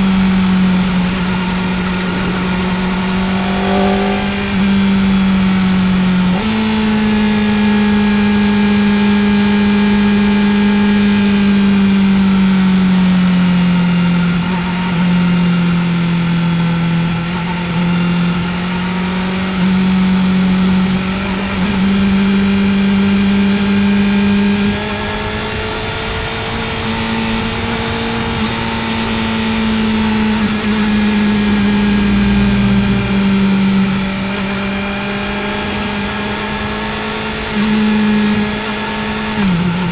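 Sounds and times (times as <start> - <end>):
motorcycle engine revving: 0.0 - 39.9
wind rushing: 0.9 - 6.2.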